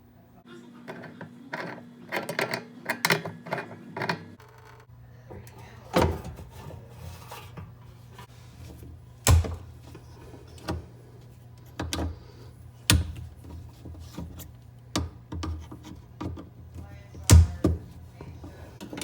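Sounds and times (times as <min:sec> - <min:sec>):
low steady hum: 0:04.4 - 0:19.0.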